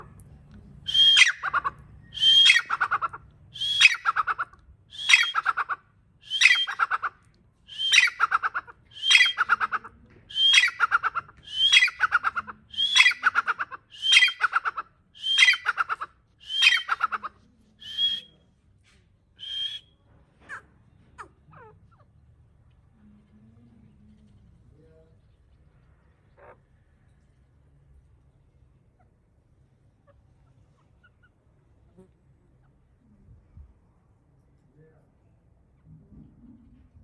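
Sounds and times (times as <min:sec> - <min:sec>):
bird calling: 0:00.9 - 0:18.4, 0:19.4 - 0:22.1.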